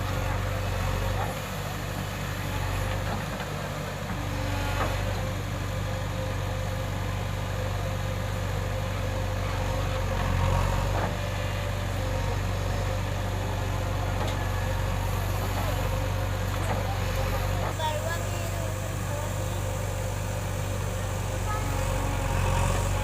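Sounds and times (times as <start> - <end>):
diesel engine running at low revs: 0.0 - 23.0.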